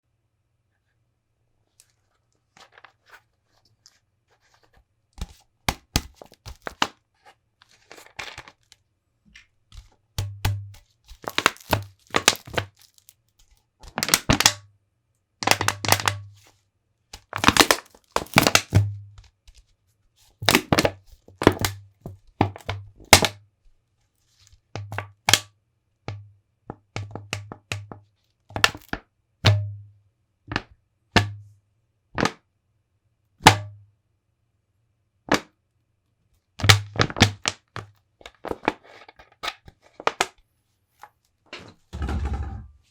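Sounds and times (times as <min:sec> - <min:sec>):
plastic bottle crinkling: 0:02.6 - 0:07.0, 0:07.6 - 0:14.6, 0:17.2 - 0:18.9, 0:20.4 - 0:21.8.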